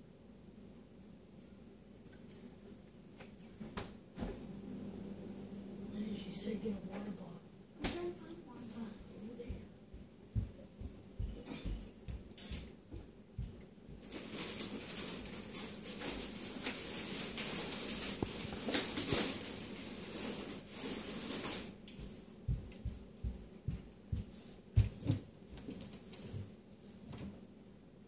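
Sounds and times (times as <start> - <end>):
rustling: 10.4 - 27.4.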